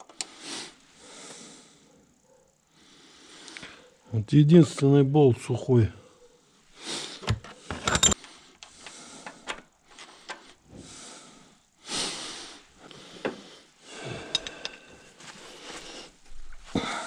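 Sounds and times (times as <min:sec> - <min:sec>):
tools clinking on engine metal: 0:07.7 - 0:08.3, 0:14.3 - 0:14.8.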